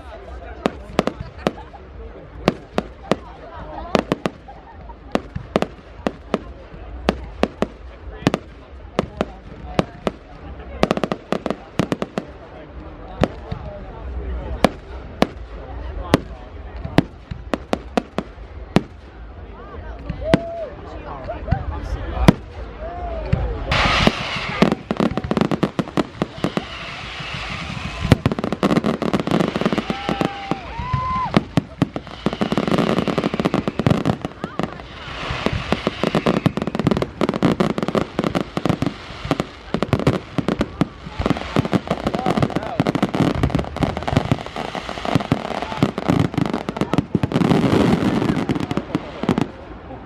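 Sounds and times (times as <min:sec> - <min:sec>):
fireworks bangs and crackles: 0:00.0 - 0:50.0
firework whistles: 0:23.7 - 0:49.4.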